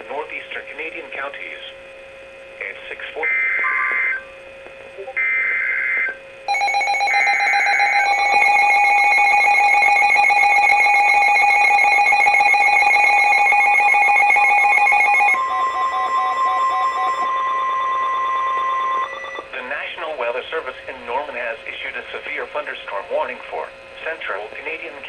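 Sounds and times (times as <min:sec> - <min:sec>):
steady higher warning tone: 0:05.0 - 0:19.6
loud steady alert tone: 0:05.1 - 0:19.5.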